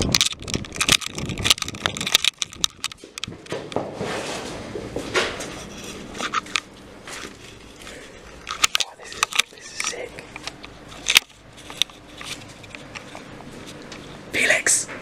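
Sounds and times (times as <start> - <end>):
soft rustling hiss: 5.4 - 15.0.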